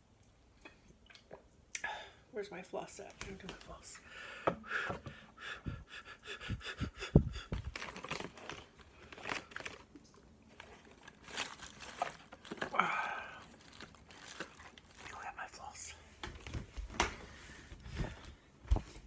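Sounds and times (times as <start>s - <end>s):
heavy breaths: 4.0s - 7.8s, 17.2s - 18.6s
dental floss crinkling: 7.7s - 15.7s.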